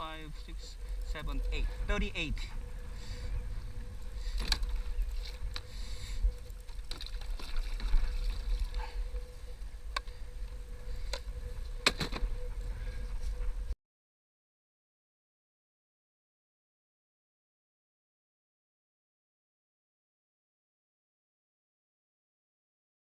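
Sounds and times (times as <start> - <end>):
low boat rumble: 0.0 - 13.8
water noise: 0.0 - 13.8.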